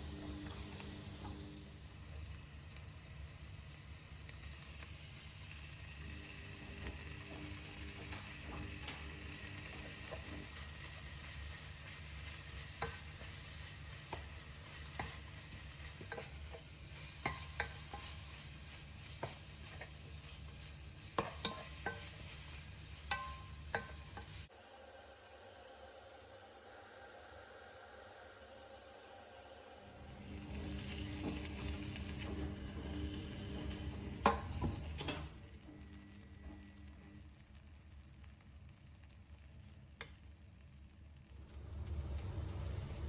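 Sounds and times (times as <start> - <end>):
food sizzling in a pan: 0.0 - 24.6, 29.9 - 43.0
steady hiss: 0.0 - 30.8.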